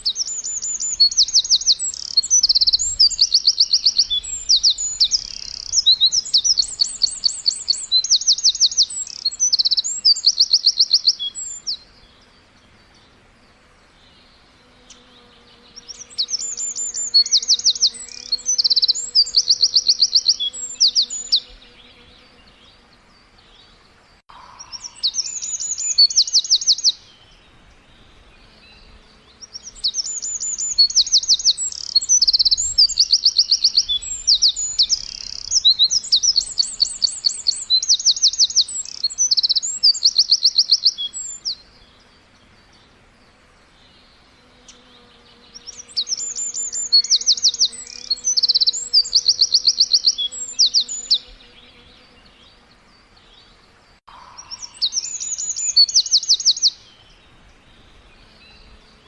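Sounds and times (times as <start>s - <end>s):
songbirds chirping trills: 0.0s - 59.0s.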